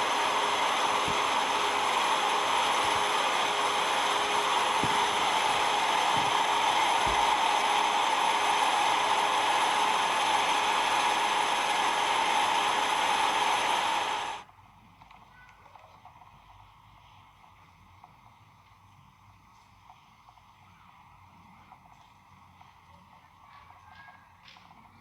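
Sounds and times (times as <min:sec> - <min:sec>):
combine harvester whirring: 0:00.0 - 0:14.4.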